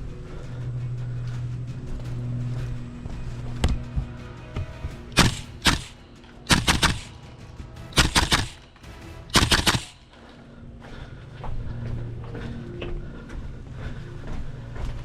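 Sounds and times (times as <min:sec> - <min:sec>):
airsoft rifle shots: 0:05.2 - 0:07.3, 0:07.9 - 0:10.0.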